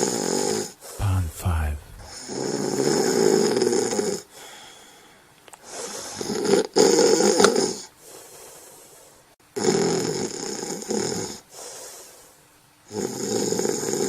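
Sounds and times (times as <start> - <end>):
quiet breathing: 4.3 - 5.4.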